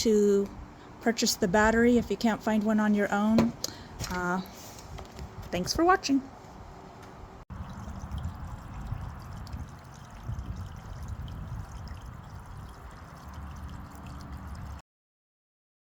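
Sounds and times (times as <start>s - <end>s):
water splashing and trickling: 7.5s - 14.8s.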